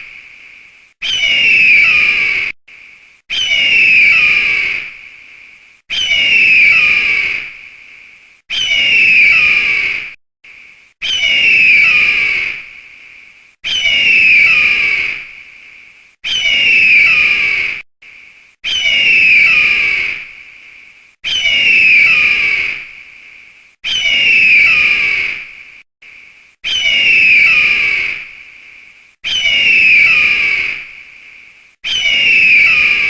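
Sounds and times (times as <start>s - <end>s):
eagle screaming: 1.0s - 2.5s, 3.3s - 4.9s, 5.9s - 7.5s, 8.5s - 10.1s, 11.0s - 12.7s, 13.6s - 15.3s, 16.2s - 17.8s, 18.6s - 20.3s, 21.2s - 22.9s, 23.8s - 25.5s, 26.6s - 28.3s, 29.2s - 30.9s, 31.8s - 33.0s.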